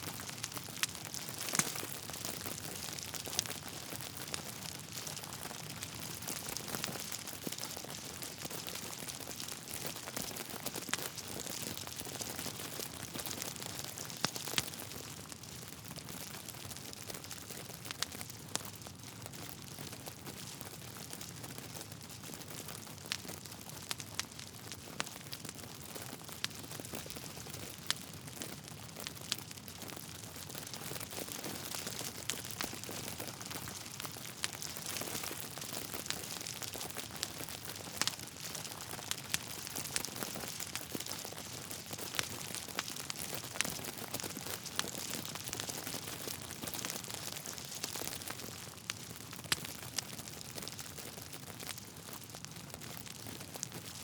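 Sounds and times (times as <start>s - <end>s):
logs crackling and popping: 0.0s - 54.0s
wood fire hissing: 1.1s - 3.4s, 30.0s - 49.7s.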